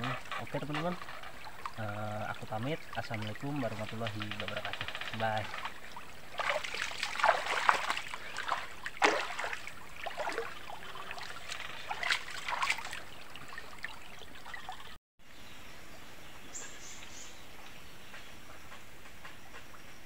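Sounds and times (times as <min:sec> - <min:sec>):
river water flowing: 0:00.0 - 0:15.0
small water splashes: 0:00.0 - 0:15.0.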